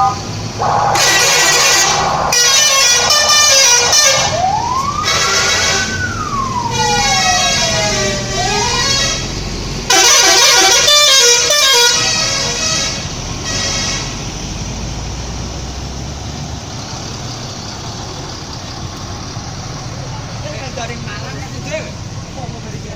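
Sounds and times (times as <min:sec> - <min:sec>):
musical air horn chords: 0:00.0 - 0:04.5
bus engine: 0:00.0 - 0:22.9.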